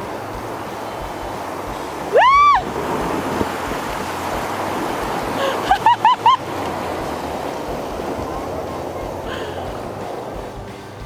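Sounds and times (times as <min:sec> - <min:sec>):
creek water rushing: 0:00.0 - 0:11.0
person crying out: 0:02.1 - 0:02.7.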